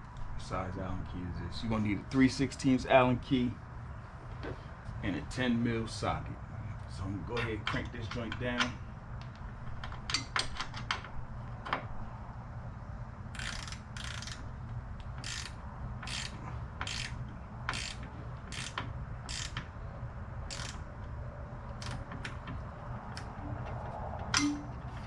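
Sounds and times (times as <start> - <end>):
socket ratchet clicking: 13.3 - 19.7, 20.5 - 20.8, 21.8 - 22.4.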